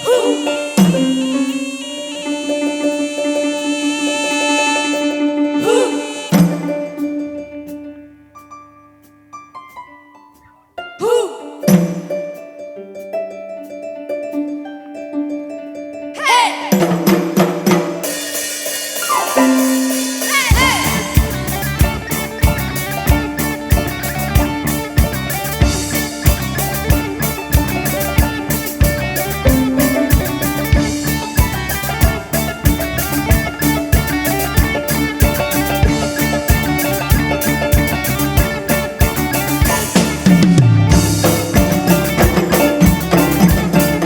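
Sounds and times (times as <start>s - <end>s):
melodic instruments with gliding notes: 0.0s - 10.8s, 11.6s - 44.0s
driving drum beat: 16.8s - 44.0s.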